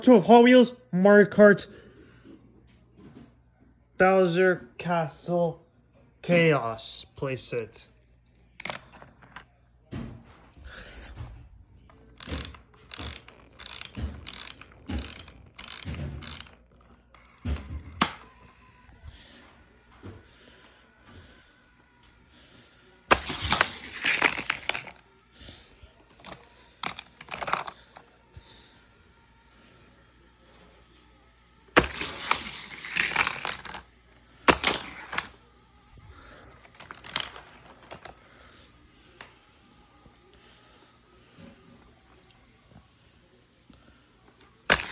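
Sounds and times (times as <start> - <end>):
packaging crackling rips: 23.1 - 25.0, 31.8 - 33.8
packaging sharp snap: 23.1 - 25.0, 31.8 - 33.8, 34.4 - 35.4, 44.7 - 44.9.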